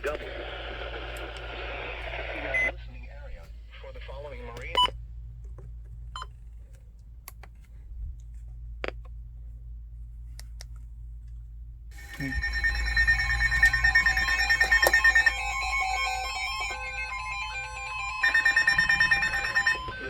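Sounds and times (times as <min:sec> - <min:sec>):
low steady hum: 0:00.0 - 0:20.0
electronic emergency alert tone: 0:12.0 - 0:20.0.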